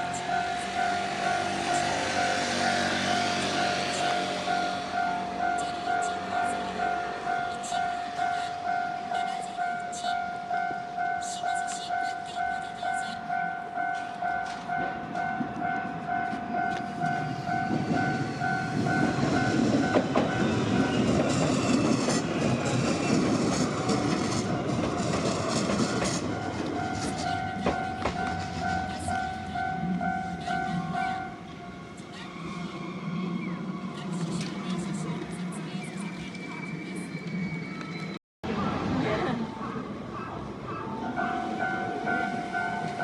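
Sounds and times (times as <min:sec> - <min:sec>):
level crossing warning bell: 0:00.0 - 0:32.2, 0:39.4 - 0:43.0
train passing: 0:00.0 - 0:43.0
wheels clicking over rail joints: 0:13.9 - 0:30.1.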